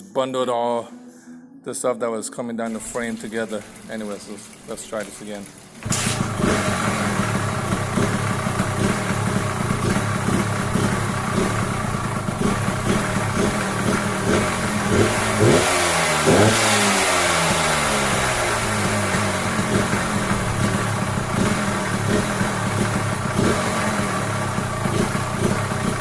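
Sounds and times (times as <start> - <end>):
two-stroke motorcycle engine revving: 5.8 - 26.0.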